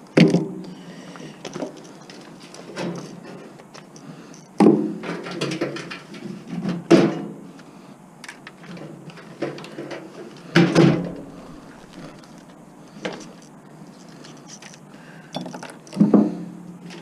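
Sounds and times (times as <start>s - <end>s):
metal parts clanking: 8.3s - 16.2s.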